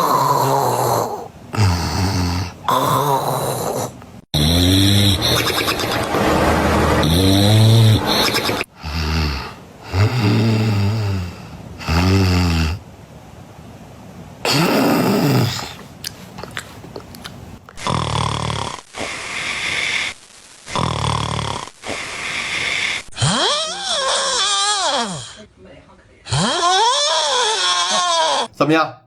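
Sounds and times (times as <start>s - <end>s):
person snoring: 0.0s - 6.1s, 7.0s - 12.8s, 14.5s - 15.8s, 17.8s - 25.4s.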